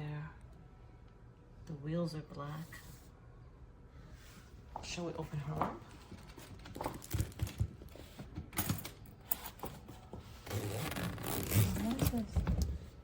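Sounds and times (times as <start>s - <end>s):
suitcase zipper rasping: 10.4s - 12.4s.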